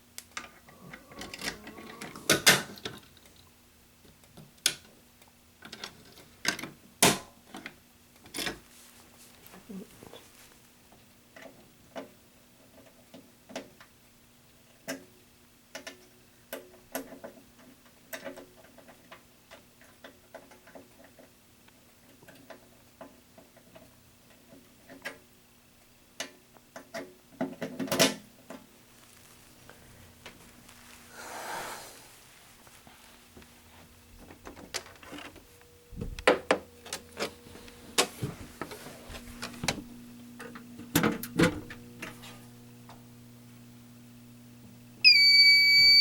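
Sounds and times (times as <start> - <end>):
faint steady hum: 21.1 - 46.0.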